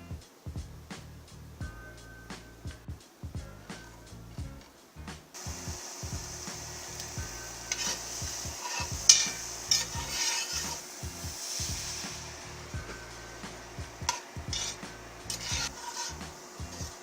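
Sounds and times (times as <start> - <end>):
food sizzling in a pan: 5.4 - 17.0
utensil stirring and scraping: 5.4 - 17.0
utensil clinking against pan: 7.7 - 10.9.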